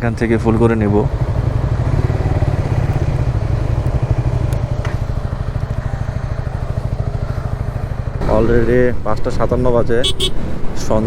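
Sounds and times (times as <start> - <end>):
motorcycle engine idling: 0.0 - 11.0
faint clicks: 2.7 - 5.8.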